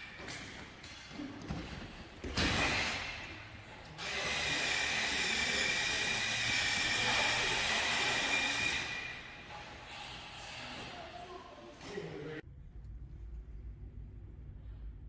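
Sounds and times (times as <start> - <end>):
hissing machine with high whine: 4.0 - 10.9.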